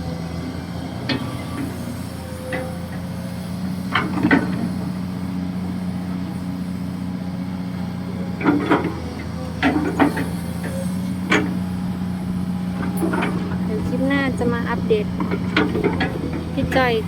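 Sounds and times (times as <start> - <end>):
excavator diesel engine running: 0.0 - 17.0
short metal clanks: 8.4 - 11.6, 12.8 - 13.7.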